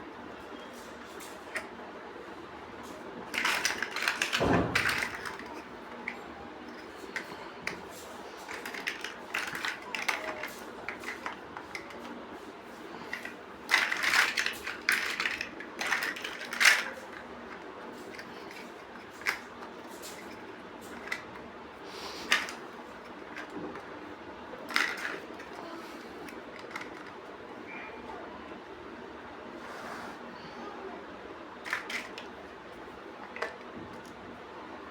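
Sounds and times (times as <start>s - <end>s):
plastic bricks clicking together: 3.3s - 6.2s, 8.5s - 12.0s, 13.1s - 17.2s.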